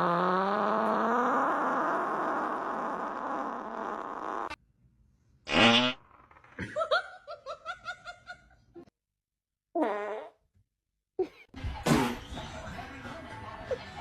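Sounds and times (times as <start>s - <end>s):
fart-like noise: 0.0s - 4.6s, 5.5s - 6.6s, 9.8s - 10.4s, 11.8s - 12.2s.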